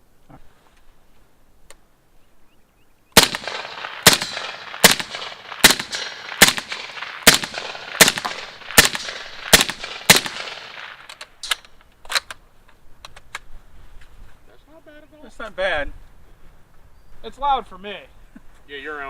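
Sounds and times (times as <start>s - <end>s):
suppressed rifle shots: 3.2s - 12.3s.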